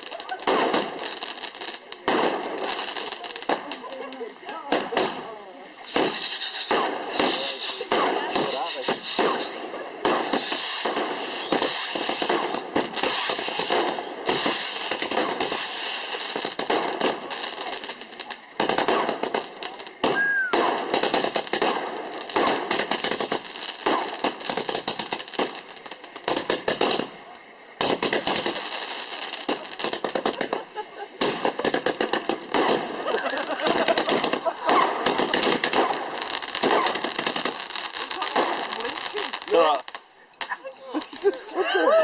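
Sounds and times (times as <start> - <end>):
fireworks crackling and banging: 0.0 - 42.0
falling firework whistle: 5.8 - 15.9, 20.0 - 21.7.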